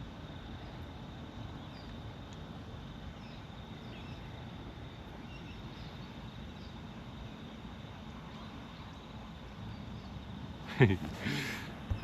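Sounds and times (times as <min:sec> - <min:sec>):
high insect drone: 0:00.0 - 0:12.0.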